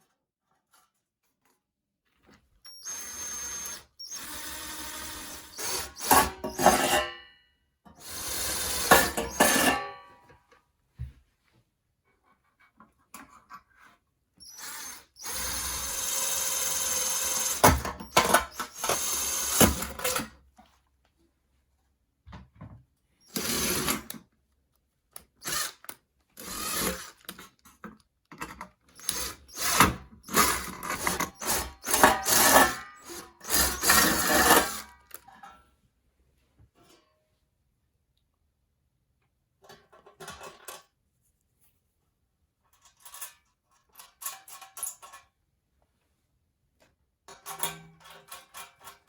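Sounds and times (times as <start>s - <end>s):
electric drill boring through metal: 2.7s - 6.9s, 8.0s - 9.7s, 14.4s - 20.2s, 23.2s - 24.1s, 25.4s - 25.8s, 26.4s - 27.3s, 29.0s - 34.9s.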